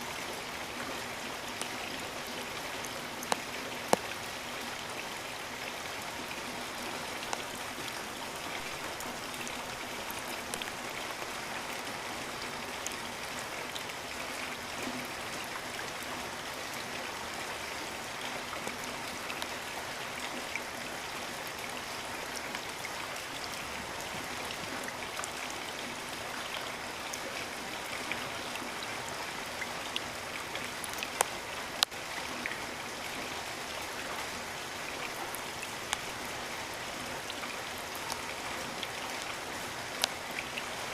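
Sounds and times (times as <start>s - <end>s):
steady rainfall: 0.0s - 40.9s
raindrops ticking: 1.2s - 13.2s, 29.6s - 32.6s, 35.1s - 40.9s.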